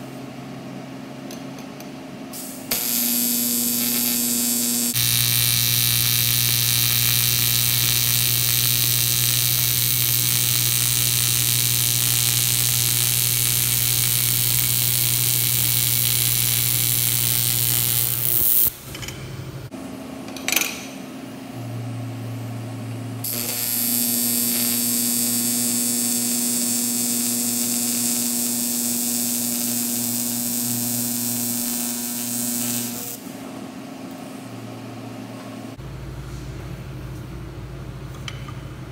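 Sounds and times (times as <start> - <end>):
welding arc buzzing hiss: 2.3 - 18.8, 23.2 - 33.4.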